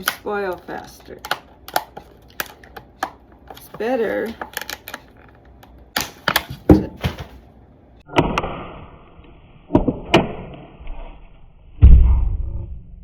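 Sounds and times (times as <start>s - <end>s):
knocks and clatters of items: 6.0s - 7.4s
heavy thud: 11.8s - 13.0s.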